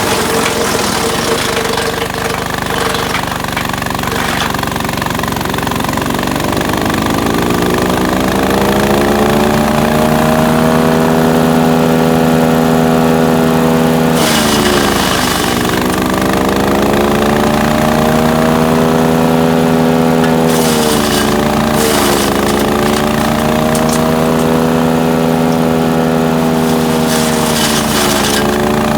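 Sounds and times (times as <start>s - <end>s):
wood chipping noise: 0.0s - 5.2s, 14.1s - 16.8s, 20.2s - 28.9s
wood chipper engine running: 0.0s - 28.9s.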